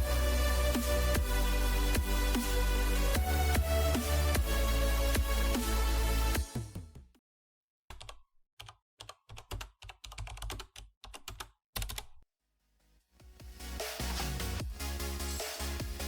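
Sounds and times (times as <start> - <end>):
background music: 0.0 - 7.1, 13.3 - 16.0.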